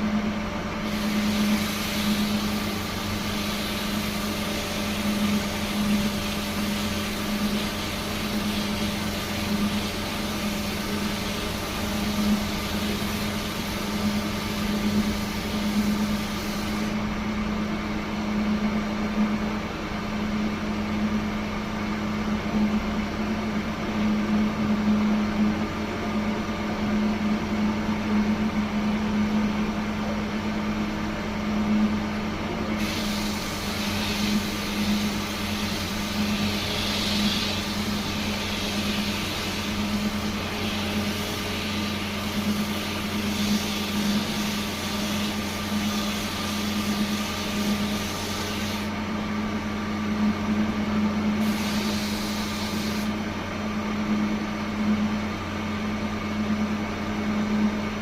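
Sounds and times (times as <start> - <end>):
high hissing noise: 0.8 - 17.0, 32.8 - 49.0, 51.4 - 53.2.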